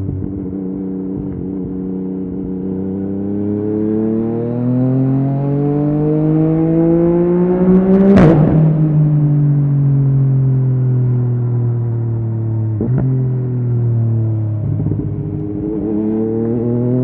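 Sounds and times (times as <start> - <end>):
motorcycle engine revving: 0.0 - 9.8, 12.7 - 17.0.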